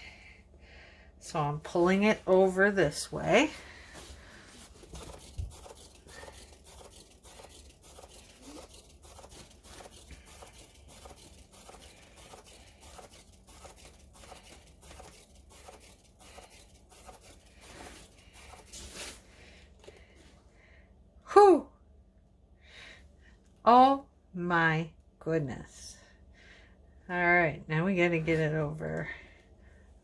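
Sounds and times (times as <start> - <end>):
low steady hum: 0.0 - 30.0.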